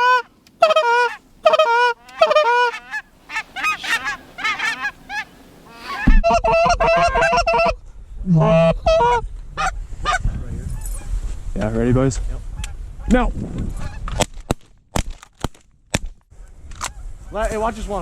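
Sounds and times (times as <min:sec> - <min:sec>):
geese honking and clucking: 0:00.0 - 0:10.2
wind rumble on microphone: 0:06.0 - 0:15.0, 0:16.3 - 0:18.0.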